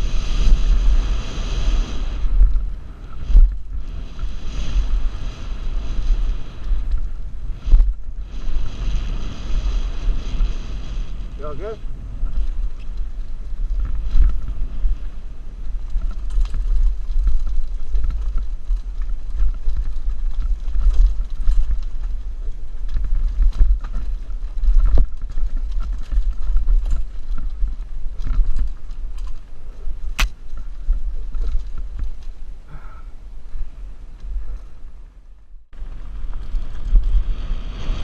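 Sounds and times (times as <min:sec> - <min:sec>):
bike clicks and rattles: 0:00.0 - 0:38.0
wind buffeting camera: 0:00.0 - 0:38.0
sharp crack: 0:30.1 - 0:30.4.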